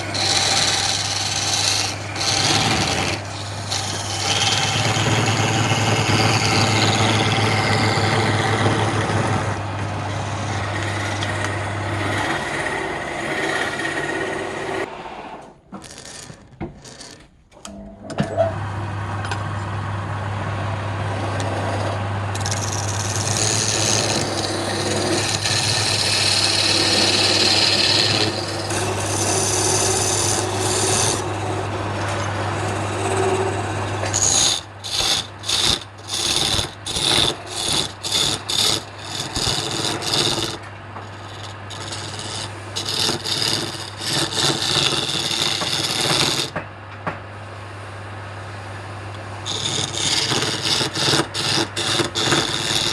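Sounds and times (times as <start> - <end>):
lathe motor humming: 0.0 - 15.0, 18.5 - 46.6, 49.1 - 52.9
tool scraping spinning wood: 0.0 - 17.3, 21.1 - 46.7, 49.2 - 52.9.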